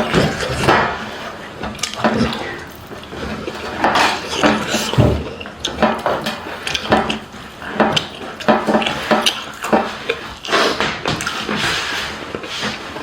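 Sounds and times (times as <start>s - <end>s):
clicks against a plate: 0.0s - 11.6s
wet chewing and mouth smacks: 1.7s - 11.4s.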